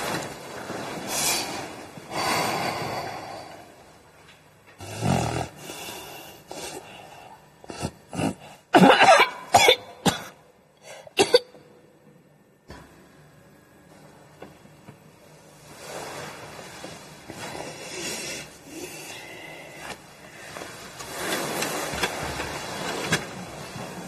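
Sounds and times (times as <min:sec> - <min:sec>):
person breathing heavily: 0:01.1 - 0:03.8, 0:05.6 - 0:08.7
low snore: 0:04.8 - 0:06.8
person coughing and spluttering: 0:07.7 - 0:10.4, 0:11.2 - 0:11.6.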